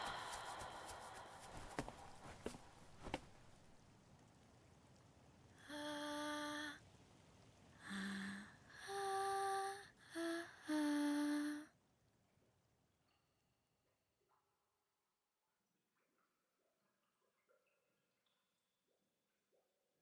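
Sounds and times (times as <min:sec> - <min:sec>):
girl humming: 0:05.6 - 0:06.8, 0:07.8 - 0:11.6.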